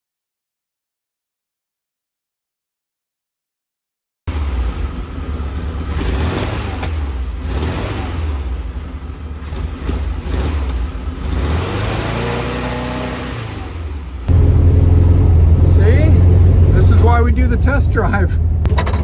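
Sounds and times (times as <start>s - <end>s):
car engine rumbling: 4.3s - 19.0s
road noise: 4.3s - 19.0s.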